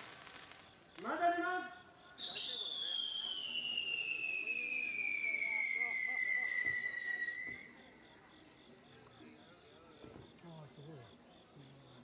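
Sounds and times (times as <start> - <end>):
crickets chirring: 0.0 - 12.0
firework whistle: 2.1 - 7.8.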